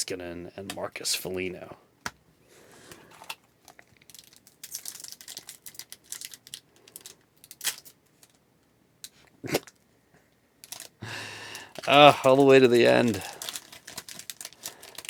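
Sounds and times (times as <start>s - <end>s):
foil wrapper crinkling and tearing: 2.9s - 8.4s, 10.6s - 15.0s.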